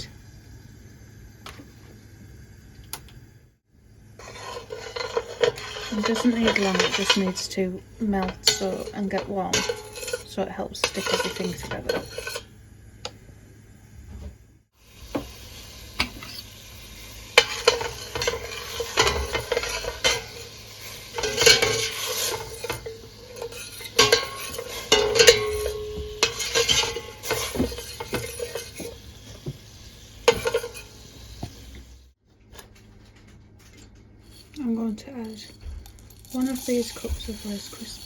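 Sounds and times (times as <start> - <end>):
spoon scraping and clinking in saucepan: 4.2 - 12.5, 16.0 - 29.0, 30.2 - 31.0.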